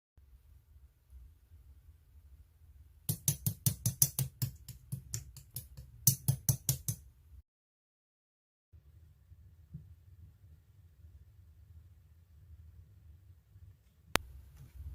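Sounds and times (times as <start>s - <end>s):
fast sharp knocks: 3.1s - 7.0s.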